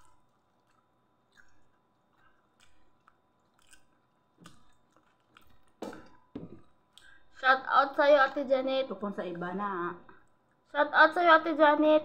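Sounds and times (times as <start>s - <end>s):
person chewing food: 0.0s - 7.2s.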